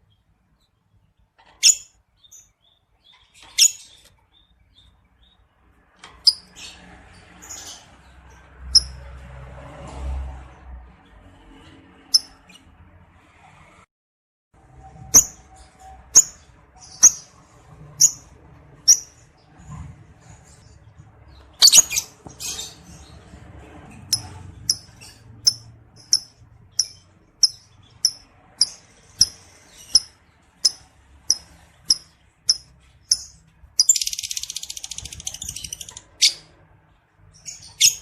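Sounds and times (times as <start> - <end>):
lovebird chirping: 1.6 - 5.4, 8.7 - 9.0, 15.1 - 17.4, 18.0 - 19.2, 21.6 - 23.2, 24.1 - 36.5, 37.4 - 38.0.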